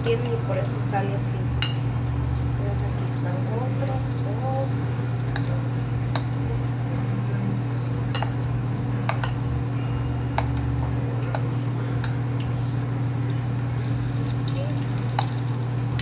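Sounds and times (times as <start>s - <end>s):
utensils clinking against dishes: 0.0s - 1.9s, 5.2s - 7.0s, 8.1s - 8.4s, 9.0s - 9.5s, 10.4s - 12.5s
low hum: 0.0s - 16.0s.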